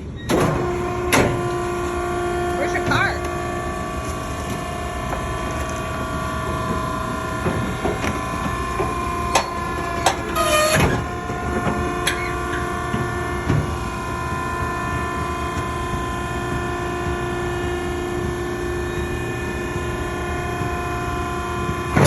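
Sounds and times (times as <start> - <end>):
hydraulic baler humming: 0.0 - 22.0
metal squealing under pressure: 0.2 - 14.3
knocks and clanks: 0.3 - 18.6.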